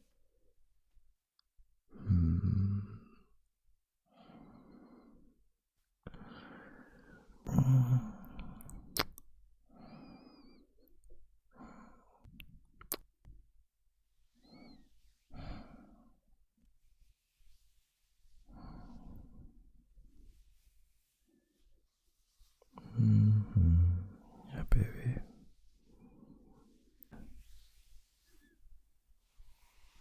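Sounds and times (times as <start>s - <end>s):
man breathing slowly: 4.1s - 5.4s, 6.1s - 8.7s
man sighing: 7.5s - 8.6s, 22.9s - 25.2s
mouth clicks: 8.3s - 9.3s, 12.4s - 13.1s.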